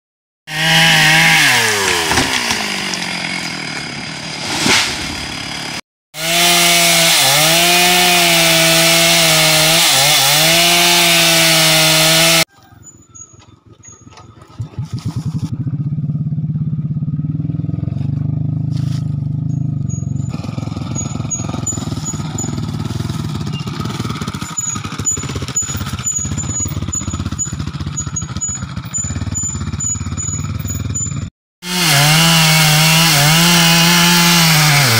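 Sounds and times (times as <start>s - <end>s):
chainsaw engine running: 0.5s - 12.5s, 20.2s - 34.9s.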